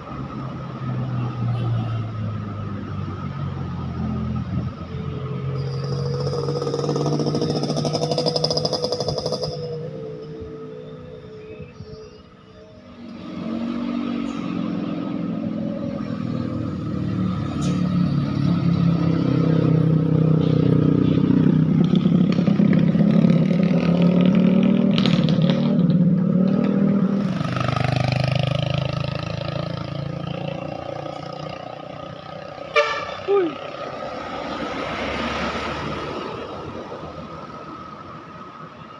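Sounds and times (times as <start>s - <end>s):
heavy vehicle engine passing: 12.9s - 38.1s.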